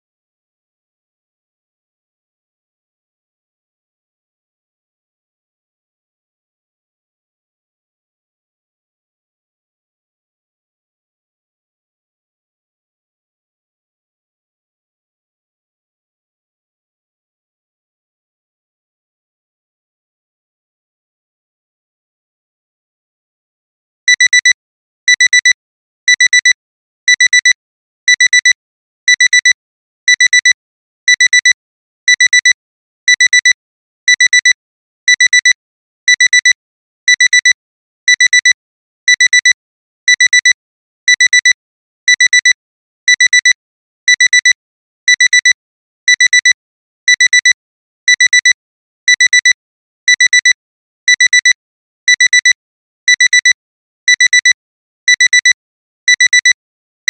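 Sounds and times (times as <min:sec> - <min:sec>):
alarm clock double beeps: 0:24.1 - 0:56.6.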